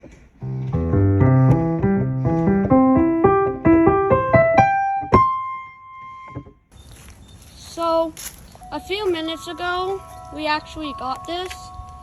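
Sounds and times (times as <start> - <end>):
keyboard notes climbing in pitch: 0.4 - 6.5.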